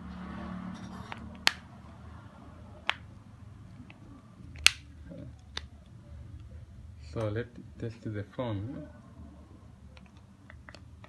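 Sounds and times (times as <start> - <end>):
plastic phone parts clicking: 3.8 - 5.7, 9.9 - 11.0.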